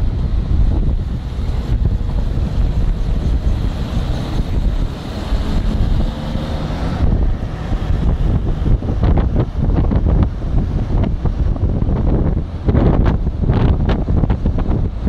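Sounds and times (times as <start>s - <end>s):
car travel noise: 0.0s - 15.0s
wind buffeting microphone: 0.0s - 15.0s.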